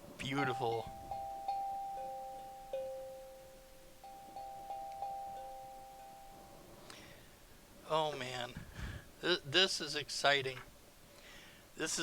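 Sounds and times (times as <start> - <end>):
tongue drum notes ringing: 0.0 - 7.2.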